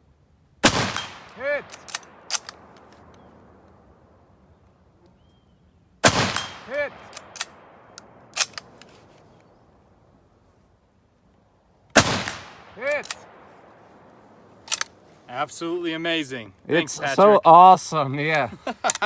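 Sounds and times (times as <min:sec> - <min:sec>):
rifle shot echoing: 0:00.6 - 0:04.0, 0:06.0 - 0:08.8, 0:11.9 - 0:15.0
sharp metallic clicks: 0:00.9 - 0:03.2, 0:14.7 - 0:15.0.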